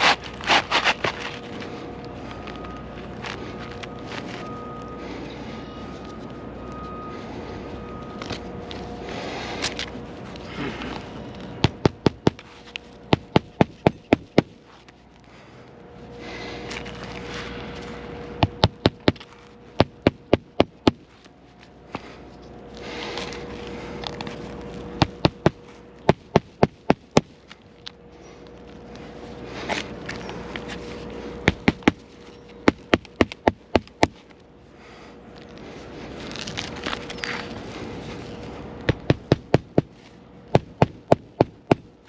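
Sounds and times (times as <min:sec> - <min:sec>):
hammer striking roofing nails: 0:11.6 - 0:12.4, 0:13.1 - 0:14.5, 0:18.4 - 0:19.2, 0:19.8 - 0:21.0, 0:25.0 - 0:27.3, 0:31.4 - 0:32.0, 0:32.6 - 0:34.2, 0:38.9 - 0:41.9.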